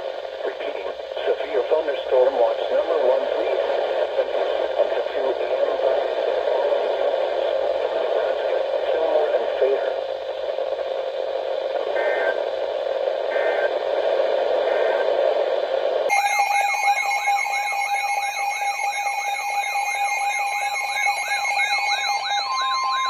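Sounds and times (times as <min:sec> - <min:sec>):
radio hiss: 0:00.0 - 0:23.0
short data bursts: 0:16.1 - 0:23.0
warbling alarm tone: 0:16.1 - 0:23.0.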